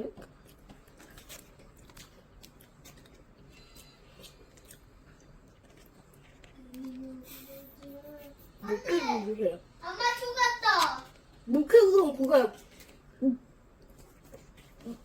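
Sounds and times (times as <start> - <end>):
snack wrapper crinkling: 0.5 - 7.0.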